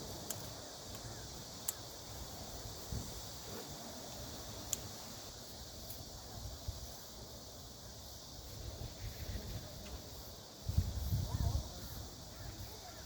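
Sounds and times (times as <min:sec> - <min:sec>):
insects chirring: 0:00.0 - 0:13.0.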